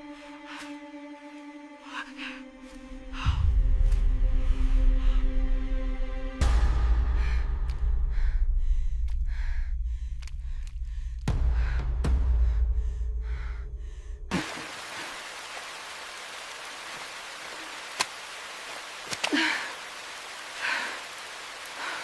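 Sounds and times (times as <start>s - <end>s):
low music-like drone: 0.0s - 14.3s
rain hiss: 14.3s - 22.0s.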